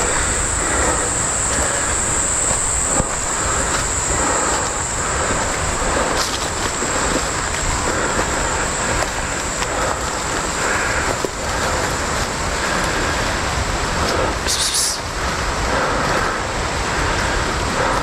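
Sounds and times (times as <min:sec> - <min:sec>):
high insect drone: 0:00.0 - 0:18.0
vehicle rumbling on rough track: 0:00.0 - 0:18.0
wind on microphone: 0:00.0 - 0:18.0.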